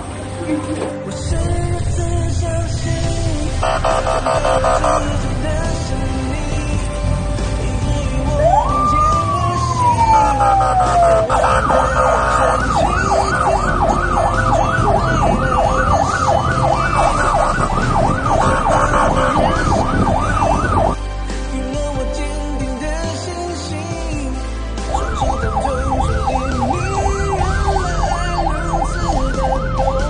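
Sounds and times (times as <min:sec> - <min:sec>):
low road rumble: 0:00.0 - 0:30.0
emergency vehicle siren: 0:03.6 - 0:05.2, 0:08.3 - 0:21.0, 0:24.8 - 0:30.0.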